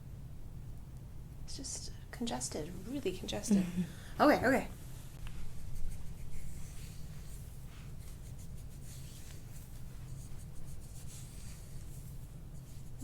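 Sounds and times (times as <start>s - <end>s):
hands rubbing skin: 5.2s - 13.0s.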